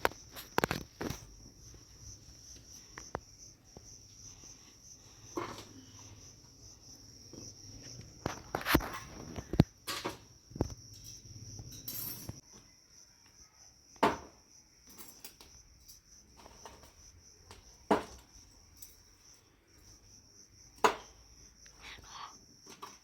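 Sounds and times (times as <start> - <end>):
crickets chirping: 0.0 - 23.0.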